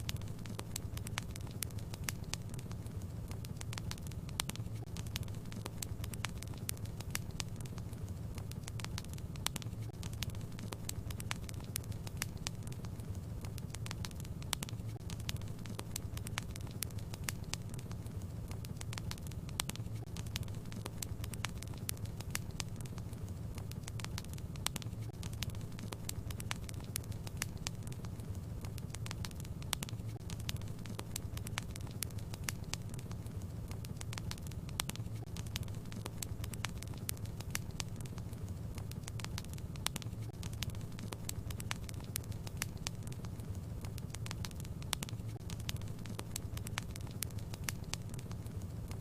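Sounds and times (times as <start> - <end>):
fireplace fire crackling and popping: 0.0 - 49.0.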